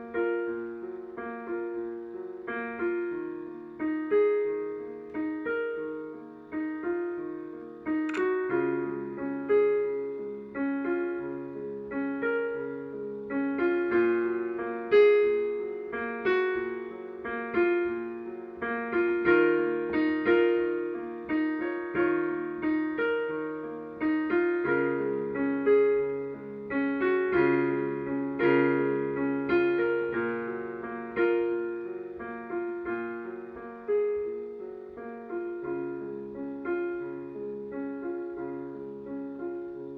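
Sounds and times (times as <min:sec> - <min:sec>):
solo piano music: 0:00.0 - 0:39.9.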